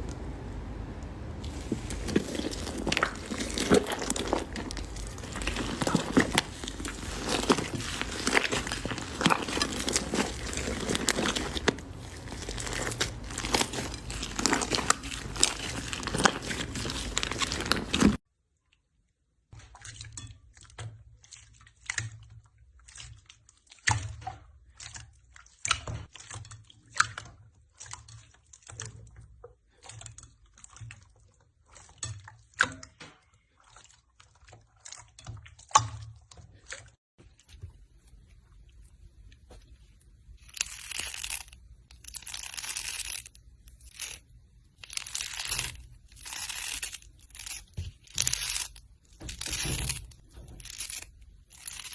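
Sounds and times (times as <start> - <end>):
slime crackling and crunching: 0.0 - 18.2, 40.4 - 51.9
slime popping: 1.4 - 18.2.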